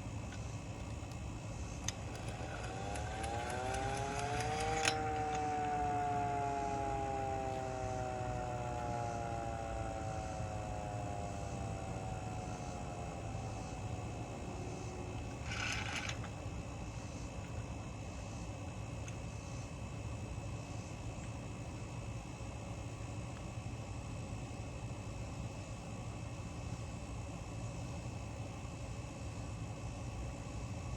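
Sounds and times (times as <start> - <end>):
hand-crank siren winding: 1.8 - 16.3.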